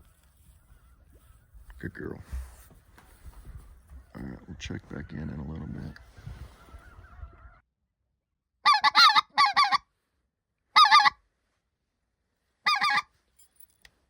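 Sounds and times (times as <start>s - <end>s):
goose calling in yodelling notes: 8.6s - 9.8s, 10.8s - 11.2s, 12.7s - 13.1s.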